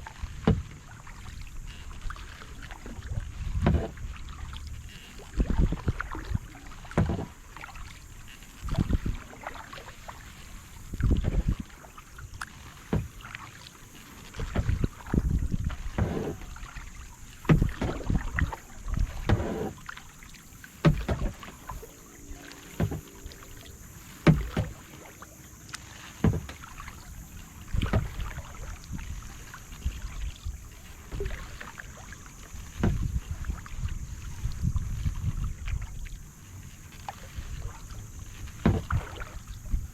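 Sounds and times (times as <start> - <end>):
paddle splashing into water: 0.0 - 39.9
water dripping off paddle: 0.1 - 39.9.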